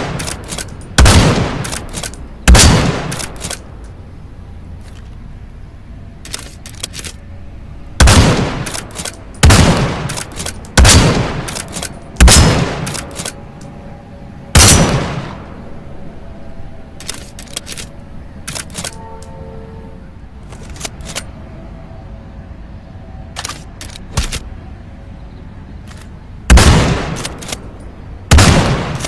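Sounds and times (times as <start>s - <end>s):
rifle shots with echo: 0.0s - 3.6s, 8.0s - 13.4s, 14.6s - 15.6s, 26.5s - 27.6s, 28.3s - 29.0s.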